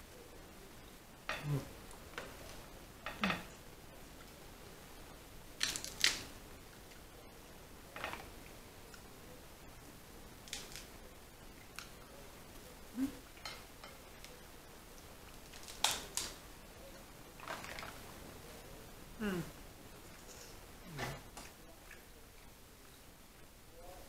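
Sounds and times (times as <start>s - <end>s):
shells cracking: 5.6s - 6.3s, 15.3s - 16.4s.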